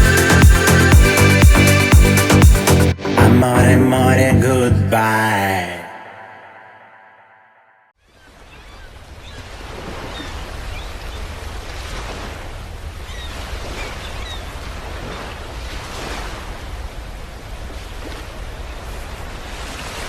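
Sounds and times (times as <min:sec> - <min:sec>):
waves washing onto shore: 0:08.4 - 0:20.0.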